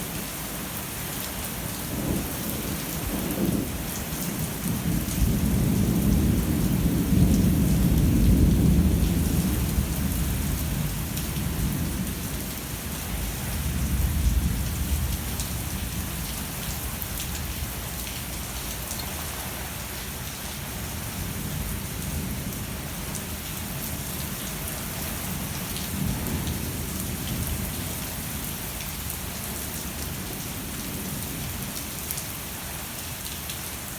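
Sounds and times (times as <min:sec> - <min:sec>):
heavy rain pouring: 0:00.0 - 0:33.9
thunder rumbling: 0:01.9 - 0:17.8.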